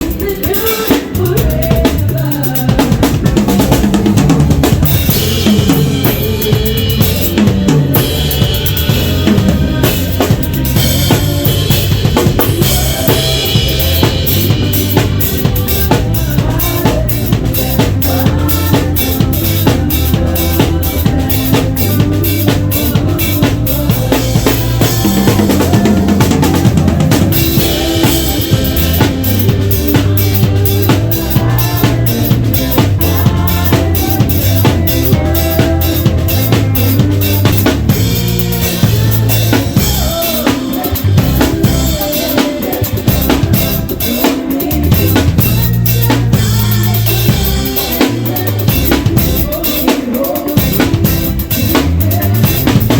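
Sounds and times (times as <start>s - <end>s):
drum kit playing: 0.0s - 52.9s.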